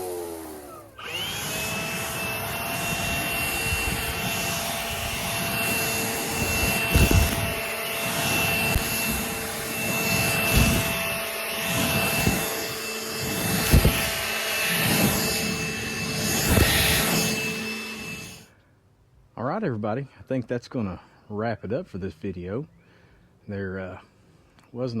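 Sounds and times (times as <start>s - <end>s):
engine running: 0.0s - 18.4s
dull thumps: 2.8s - 14.2s.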